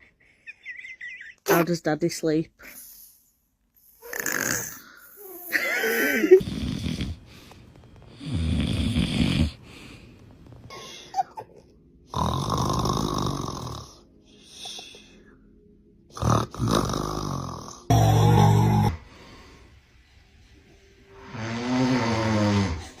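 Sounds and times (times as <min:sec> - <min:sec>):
loud rattling snores: 0:04.0 - 0:05.0, 0:06.4 - 0:10.0, 0:12.1 - 0:13.9, 0:16.2 - 0:19.0, 0:21.3 - 0:22.9
quiet breaths: 0:06.4 - 0:11.1, 0:13.9 - 0:15.8.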